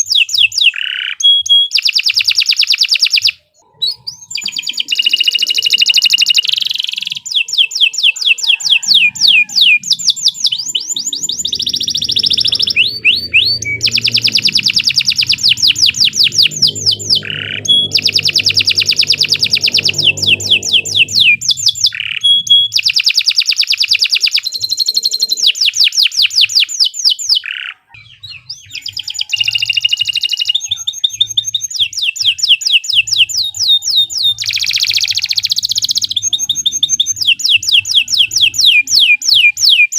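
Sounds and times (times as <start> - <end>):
canary singing: 0.0 - 39.9
faint low hum: 9.8 - 21.6.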